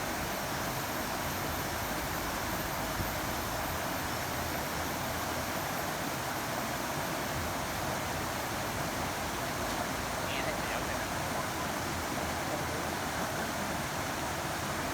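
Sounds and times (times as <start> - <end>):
water rushing: 8.6 - 14.9.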